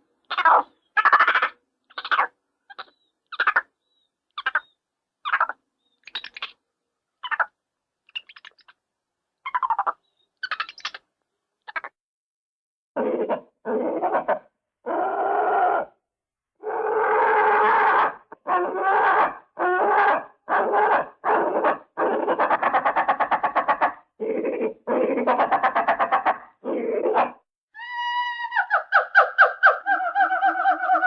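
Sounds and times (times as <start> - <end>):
animal chattering: 0.3 - 3.7, 4.4 - 4.7, 5.3 - 6.6, 7.2 - 7.5, 8.1 - 8.8, 9.5 - 11.0.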